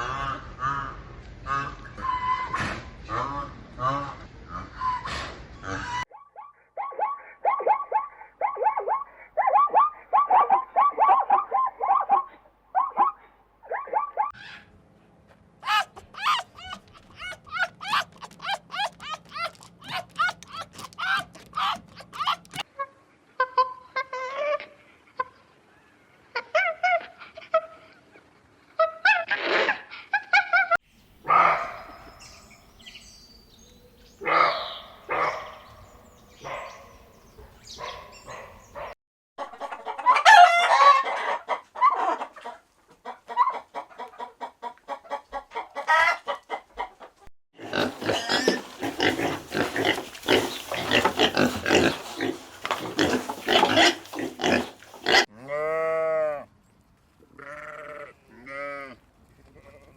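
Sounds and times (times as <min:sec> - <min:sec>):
chickens clucking: 0:15.6 - 0:22.7, 0:37.3 - 0:55.3.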